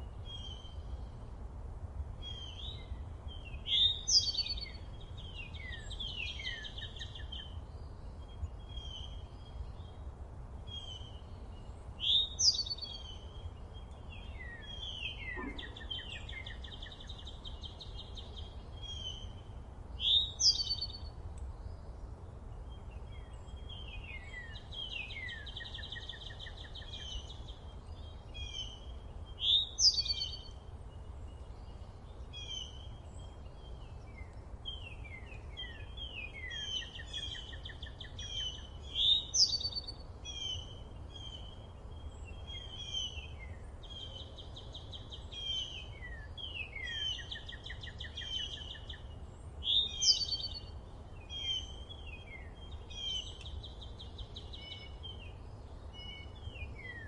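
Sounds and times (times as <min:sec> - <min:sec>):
songbirds chirping and trilling: 0:00.0 - 0:57.0
loud bright bird call: 0:14.4 - 0:17.0.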